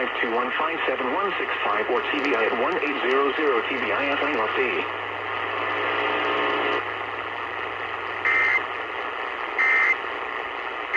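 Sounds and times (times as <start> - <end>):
radio static: 0.0 - 10.9
low hum: 1.0 - 10.9
buzzing tone: 8.2 - 8.6.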